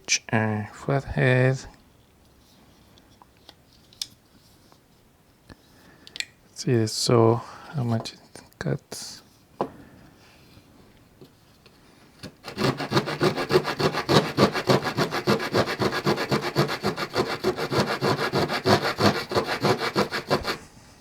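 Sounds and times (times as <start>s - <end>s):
small saw cutting: 12.2s - 20.6s.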